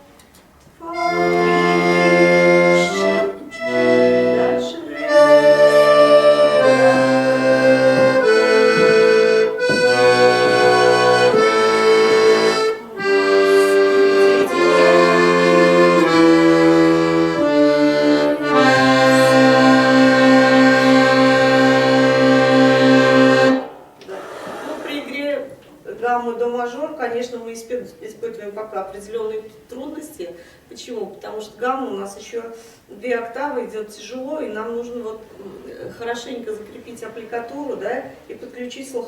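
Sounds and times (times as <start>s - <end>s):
accordion playing a scale: 0.8s - 23.8s.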